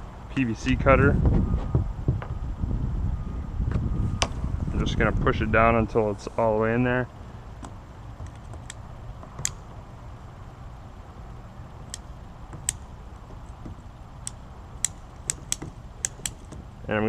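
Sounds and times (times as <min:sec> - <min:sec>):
steady low hum: 0:00.0 - 0:17.0
plastic clicks and taps: 0:11.9 - 0:16.6.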